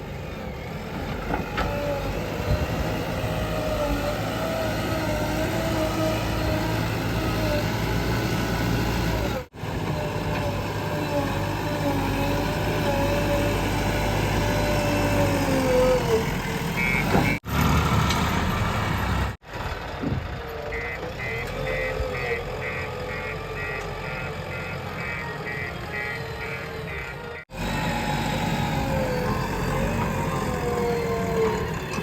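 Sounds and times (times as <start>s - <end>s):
diesel machinery running: 0.0s - 32.0s
reversing alarm beeping: 16.8s - 17.4s, 20.7s - 27.4s.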